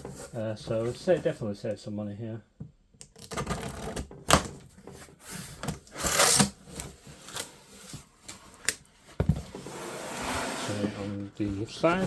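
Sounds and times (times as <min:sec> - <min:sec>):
rasping scrape: 0:09.6 - 0:12.0.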